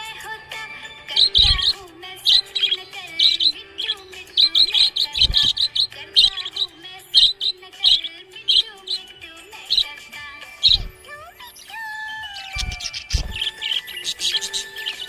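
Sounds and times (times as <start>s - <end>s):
background music: 0.0s - 15.0s
budgerigar chirping: 0.9s - 15.0s.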